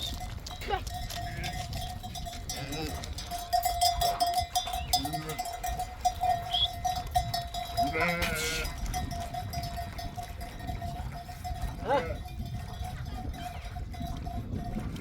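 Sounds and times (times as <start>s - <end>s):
livestock bell clanking: 0.0s - 15.0s
sheep bleating: 2.5s - 3.2s, 4.8s - 5.6s, 7.8s - 8.8s, 11.8s - 12.2s.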